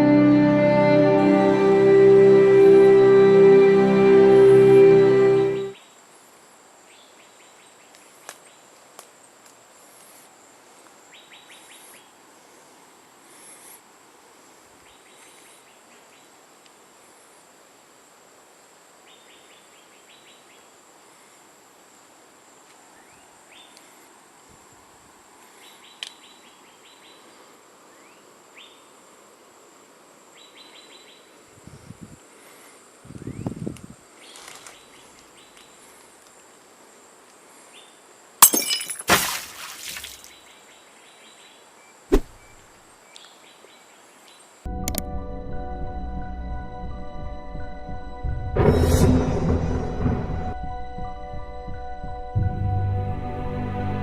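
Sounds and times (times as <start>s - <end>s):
dull low thumps: 44.7s - 53.4s.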